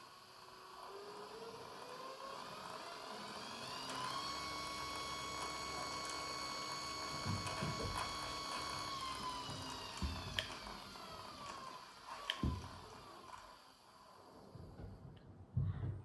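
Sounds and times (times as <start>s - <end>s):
electric motor whine: 0.0s - 14.5s.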